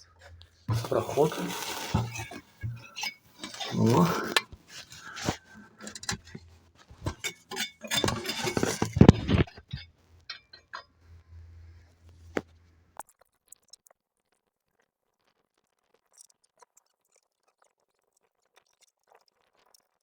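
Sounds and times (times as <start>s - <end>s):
metal hardware clinking and knocking: 0.7s - 6.4s, 7.0s - 10.9s.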